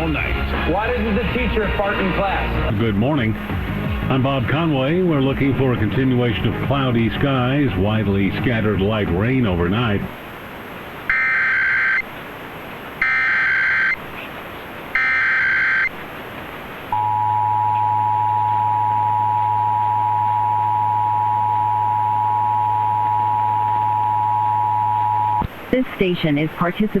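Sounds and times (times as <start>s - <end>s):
low hum: 16.9s - 25.5s.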